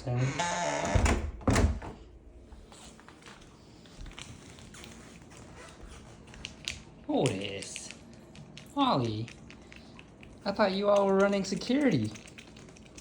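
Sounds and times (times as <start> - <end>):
door knocks shutting: 0.8 - 2.0.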